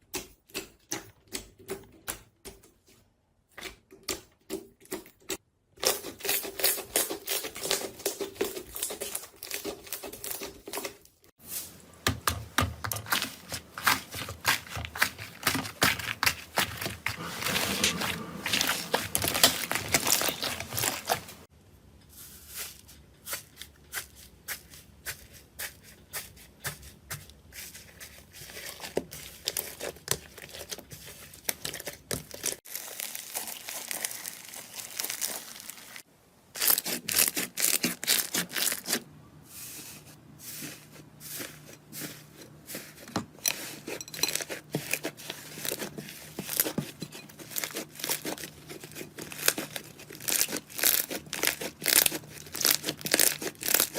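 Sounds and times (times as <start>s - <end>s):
slime squishing and crackling: 5.8s - 11.0s, 11.9s - 21.5s, 27.6s - 36.0s, 36.6s - 39.0s, 43.6s - 53.9s.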